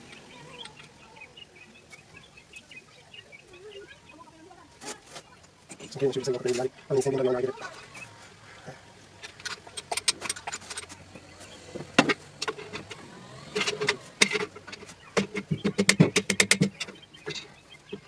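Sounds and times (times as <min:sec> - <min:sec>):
metallic tool clicks and knocks: 0:09.2 - 0:10.9, 0:11.8 - 0:17.5
power tool rattling: 0:11.8 - 0:17.4.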